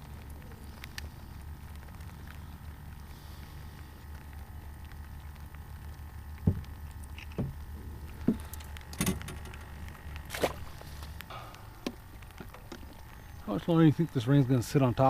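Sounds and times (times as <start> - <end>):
steady low hum: 0.0 - 15.0
knocks and clunks of gear: 8.2 - 10.8.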